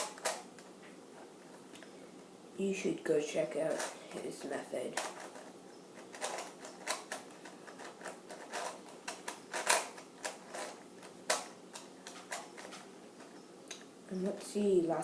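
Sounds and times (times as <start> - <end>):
puzzle cube clicking as twisted: 4.9 - 12.8.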